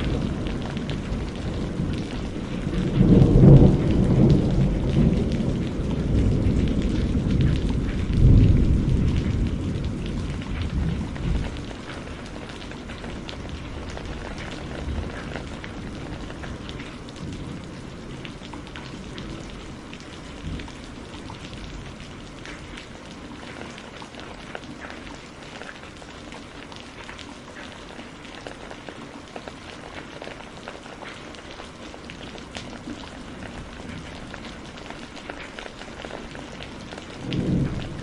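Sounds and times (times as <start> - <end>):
rumble of thunder: 0.0 - 25.2, 31.9 - 38.0
heavy rain falling: 0.0 - 38.0.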